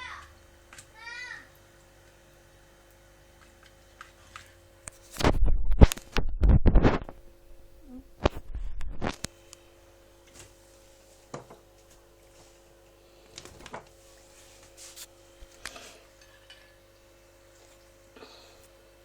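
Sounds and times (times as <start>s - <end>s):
steady low hum: 4.5s - 13.4s.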